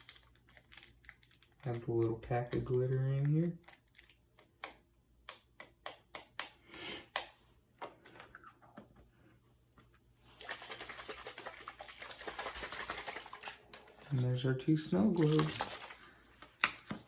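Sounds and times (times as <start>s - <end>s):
plastic clicks and crinkles: 0.0s - 4.8s.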